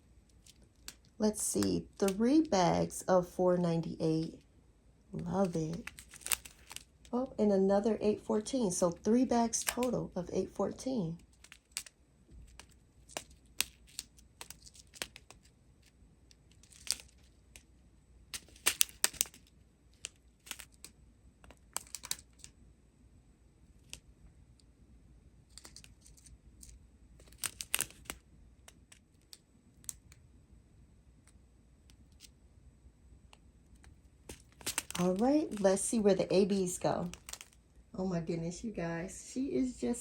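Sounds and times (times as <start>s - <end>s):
plastic packaging crinkling: 5.2s - 7.1s, 11.2s - 15.5s, 16.5s - 17.4s, 18.4s - 20.9s, 27.2s - 28.2s, 33.8s - 37.6s.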